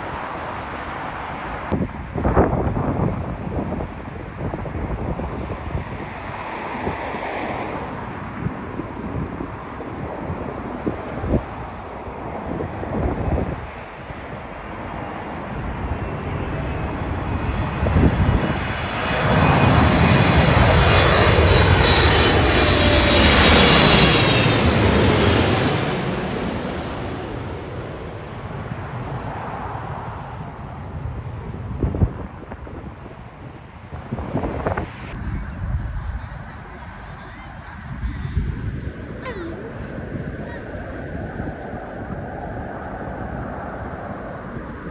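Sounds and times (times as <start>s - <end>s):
jet airliner engine noise: 0.0s - 44.9s
wind buffeting microphone: 0.0s - 44.9s
steady rush of noise: 31.8s - 42.0s.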